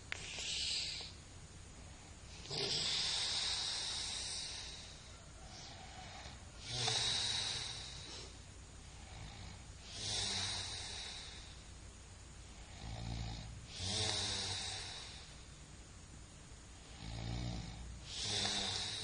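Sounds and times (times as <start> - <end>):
person snoring: 2.3 - 11.6, 12.6 - 15.4, 16.8 - 19.0.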